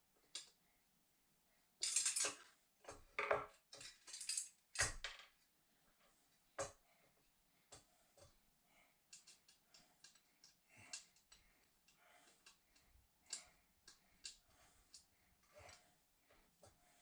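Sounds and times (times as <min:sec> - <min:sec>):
metal parts clinking and rattling: 0:01.8 - 0:02.4, 0:03.2 - 0:05.2.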